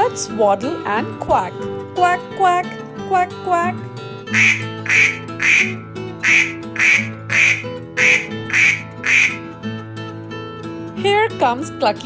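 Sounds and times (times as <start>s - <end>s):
background music: 0.0s - 12.0s
duck quacking: 4.3s - 9.5s.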